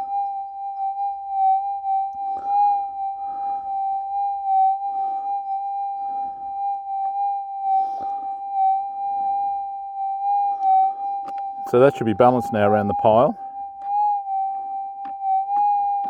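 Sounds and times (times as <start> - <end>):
metal detector threshold tone: 8.6 - 13.4.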